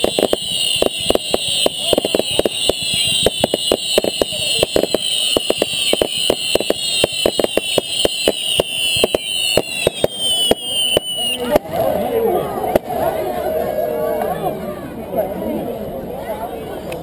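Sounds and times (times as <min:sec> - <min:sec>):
falling firework whistles: 0:00.0 - 0:11.6
firework crackle: 0:00.0 - 0:11.6.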